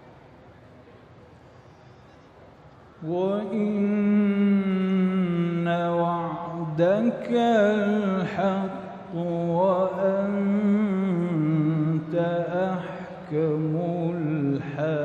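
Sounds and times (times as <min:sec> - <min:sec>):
man chanting melodically: 0:03.0 - 0:15.0.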